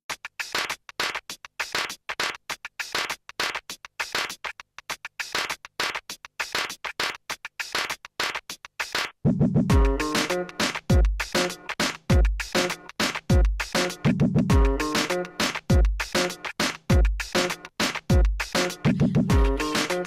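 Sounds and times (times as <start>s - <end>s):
stuttering electronic music: 18.5s - 20.0s.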